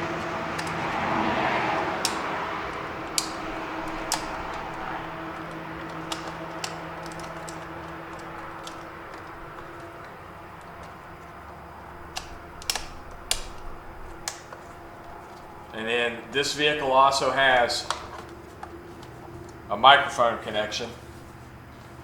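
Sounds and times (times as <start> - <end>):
low hum: 0.0 - 19.8
wiring rustling: 0.0 - 20.0
plastic connector clicks: 12.1 - 14.6.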